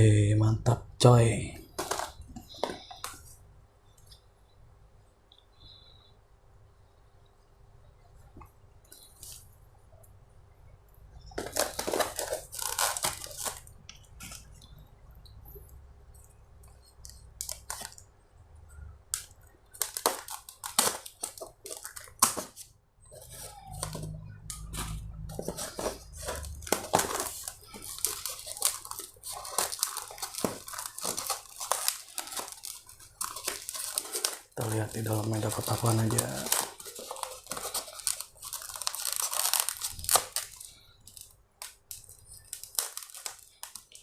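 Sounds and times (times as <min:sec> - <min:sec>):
packaging tearing and crumpling: 0:01.7 - 0:03.2, 0:11.2 - 0:14.5, 0:19.1 - 0:44.0.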